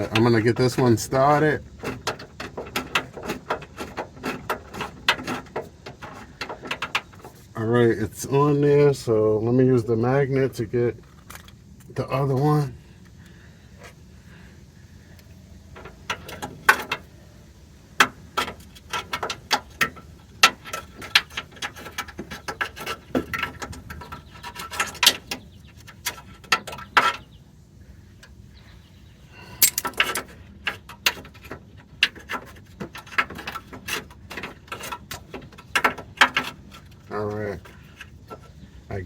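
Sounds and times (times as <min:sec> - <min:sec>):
metallic clicks of tools handled: 0:29.6 - 0:30.3.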